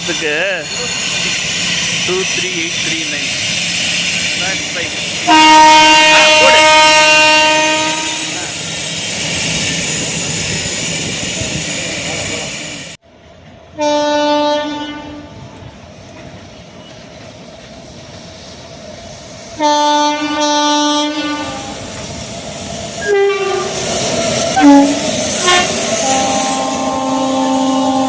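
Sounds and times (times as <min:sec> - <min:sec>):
locomotive horn blasts: 0:05.3 - 0:08.4, 0:13.8 - 0:15.3, 0:19.6 - 0:21.8, 0:23.0 - 0:23.7, 0:24.6 - 0:28.0.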